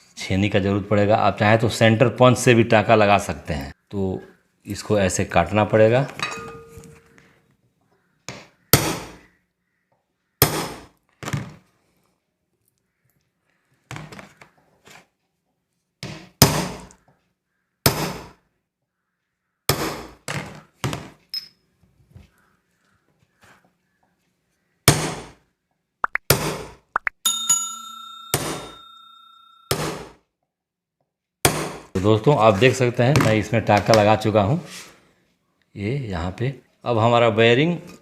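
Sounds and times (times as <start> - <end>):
hammer striking chisel on steel: 6.2 - 7.1, 27.3 - 30.2.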